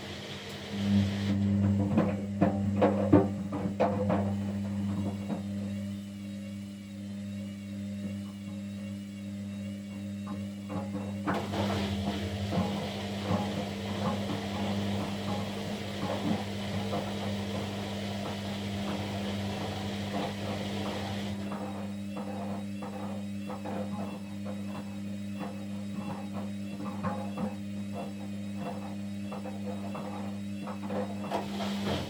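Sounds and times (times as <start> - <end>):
washing machine motor hum: 0.0 - 5.9, 10.6 - 22.8, 28.0 - 32.0.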